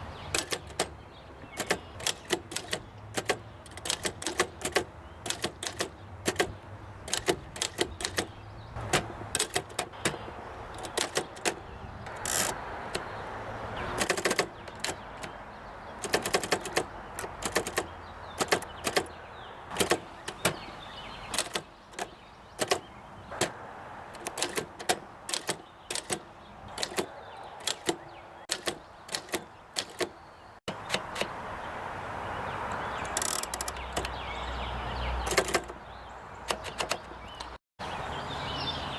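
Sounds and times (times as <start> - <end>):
typewriter keystroke clacks: 0.2 - 13.1, 13.8 - 15.4, 16.0 - 31.3, 33.0 - 34.2, 35.2 - 35.8, 36.5 - 37.6
typewriter rattling strokes: 0.3 - 6.5, 7.1 - 13.0, 13.8 - 15.4, 16.0 - 19.1, 19.7 - 20.6, 21.3 - 31.3, 33.0 - 34.1, 35.2 - 35.8, 36.5 - 37.6.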